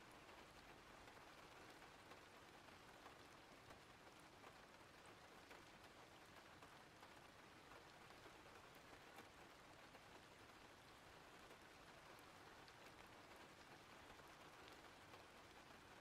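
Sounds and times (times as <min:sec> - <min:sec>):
raindrop ticks: 0:00.1 - 0:16.0.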